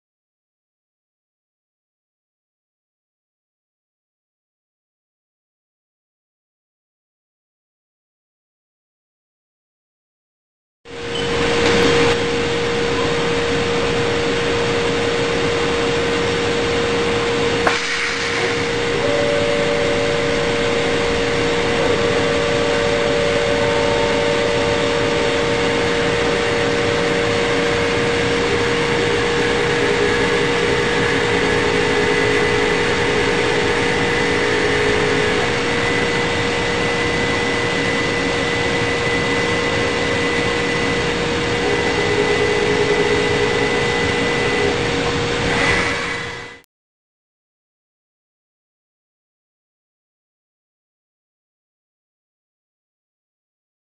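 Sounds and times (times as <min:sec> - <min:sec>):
cnc machine cutting: 0:10.9 - 0:46.6
spindle whine: 0:10.9 - 0:46.6.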